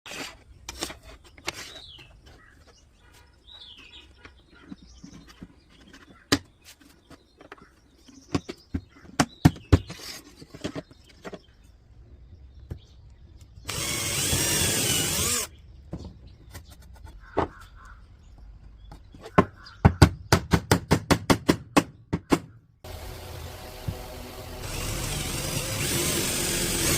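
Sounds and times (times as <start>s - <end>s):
power drill running: 13.7s - 15.5s, 22.9s - 26.9s.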